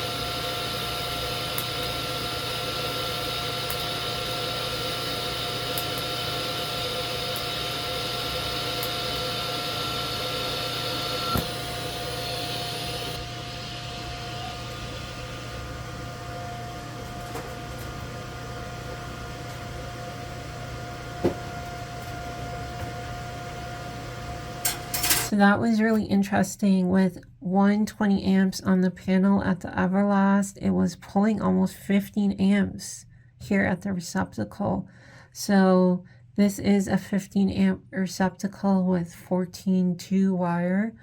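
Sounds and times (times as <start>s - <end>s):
welder click: 0.0s - 13.3s, 24.6s - 25.3s
machine hum and whine: 0.0s - 25.3s
welder hissing: 0.0s - 25.3s.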